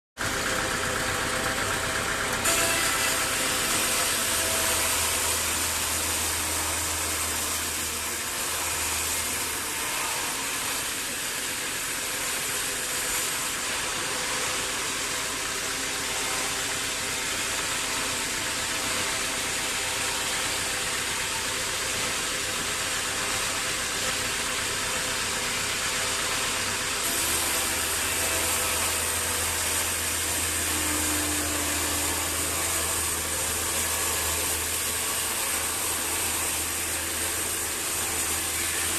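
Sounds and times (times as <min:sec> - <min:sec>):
low motor hum: 0:00.2 - 0:09.4
sawmill machinery rushing: 0:00.2 - 0:38.9.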